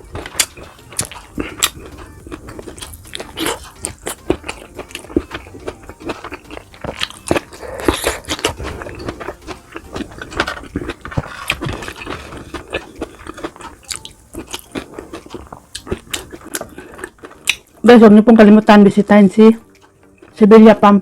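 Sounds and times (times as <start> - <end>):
chewing and biting food: 0.0 - 17.9, 19.6 - 20.4.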